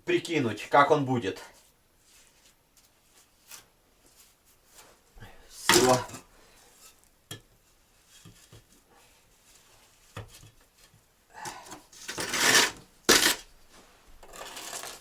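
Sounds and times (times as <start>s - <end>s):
trowel scraping brick and mortar: 5.7s - 6.2s, 12.0s - 13.6s, 14.2s - 15.0s.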